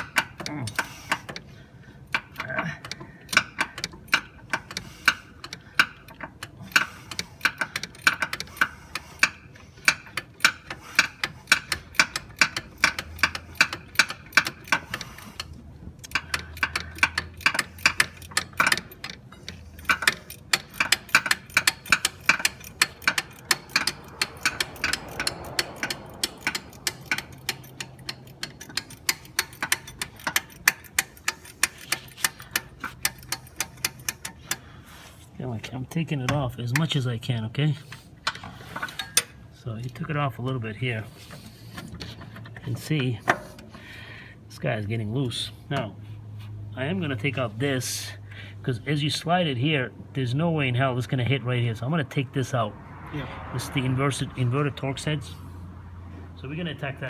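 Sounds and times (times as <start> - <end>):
ratcheting wrench clicking: 0.0 - 35.3, 37.9 - 40.0.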